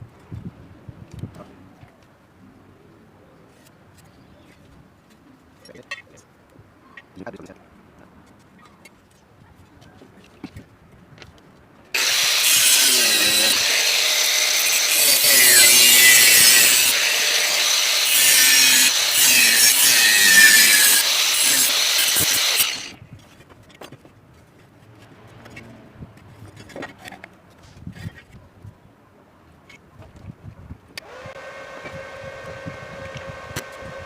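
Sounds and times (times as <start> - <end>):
angle grinder cutting steel: 12.0 - 23.0, 31.0 - 34.0.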